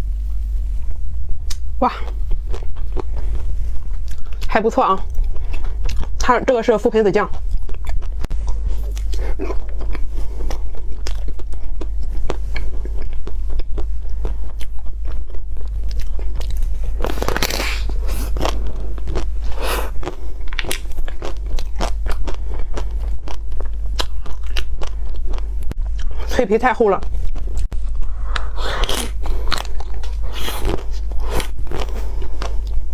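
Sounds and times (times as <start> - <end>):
steady low hum: 0.0 - 32.9
chocolate shell crunching: 1.4 - 26.2.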